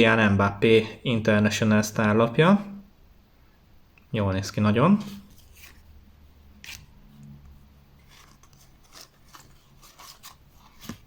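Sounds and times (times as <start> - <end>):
trading cards rustling and clicking: 8.0 - 11.0.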